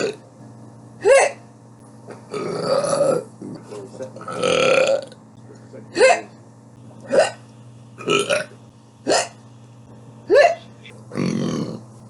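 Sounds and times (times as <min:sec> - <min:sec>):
high-pitched burp: 0:02.3 - 0:03.3, 0:04.2 - 0:05.2, 0:07.0 - 0:07.4, 0:08.0 - 0:09.4
rough burp: 0:02.3 - 0:03.3, 0:04.3 - 0:05.2.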